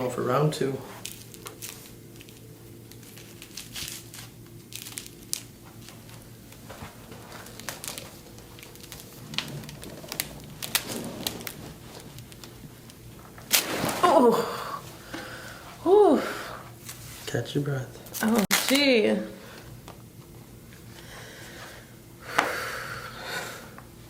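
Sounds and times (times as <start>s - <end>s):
faint steady hum: 0.0s - 24.0s
crinkling and rustling: 0.9s - 14.0s.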